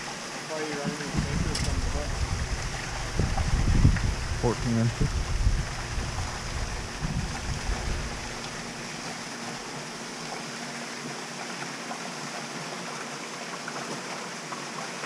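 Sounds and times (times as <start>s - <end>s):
rushing water-like hiss: 0.0s - 15.0s
low rumble: 1.1s - 8.8s.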